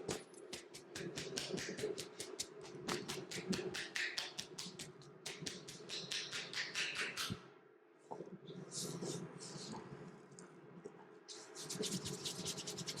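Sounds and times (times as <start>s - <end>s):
rapid hand taps on head: 0.1s - 7.4s
soft rubbing: 11.3s - 13.0s.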